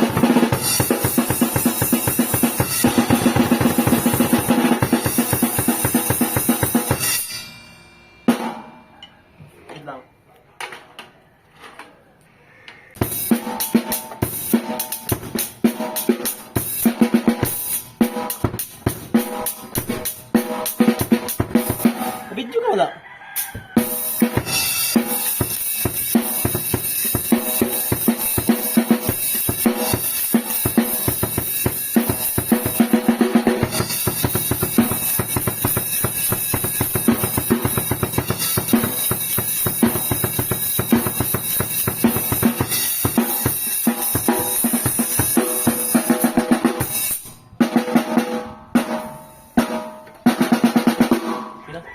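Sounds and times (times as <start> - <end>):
bass drum: 0.0 - 7.0
snare drum strokes and fills: 0.0 - 7.3, 13.0 - 22.3, 23.4 - 51.6
cymbals ringing: 0.5 - 10.3, 23.9 - 33.0, 33.6 - 47.4.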